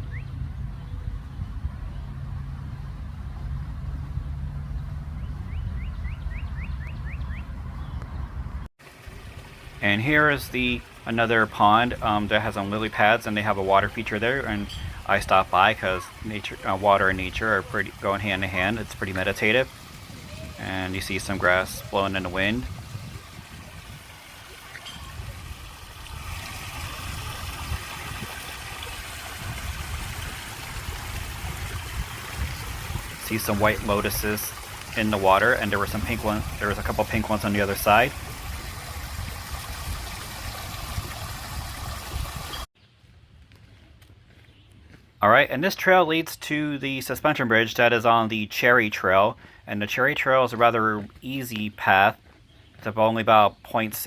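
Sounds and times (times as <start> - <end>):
songbird singing rising notes: 0.0 - 2.2, 4.6 - 8.7
wind rumbling on microphone: 0.0 - 8.7, 14.6 - 15.2, 18.6 - 44.9
water feature splashing: 8.8 - 42.7.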